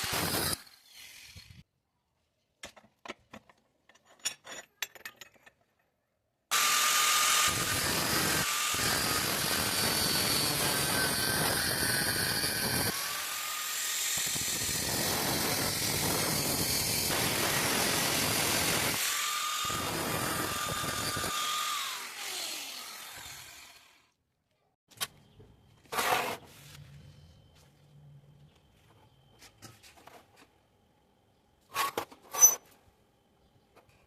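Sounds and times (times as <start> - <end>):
drill bit grinding: 6.5 - 24.0
electric grinder whining: 6.5 - 24.0.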